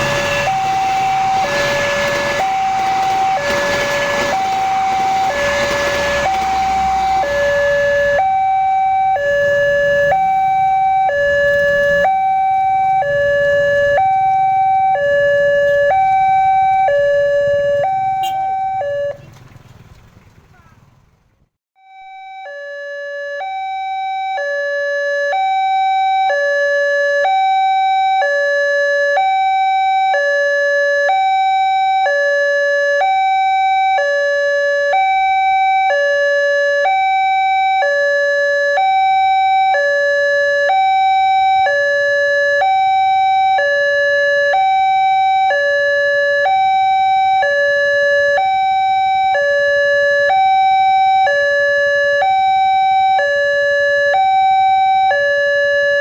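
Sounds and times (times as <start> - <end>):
two-tone electronic warning siren: 0.0 - 19.3, 21.8 - 56.0.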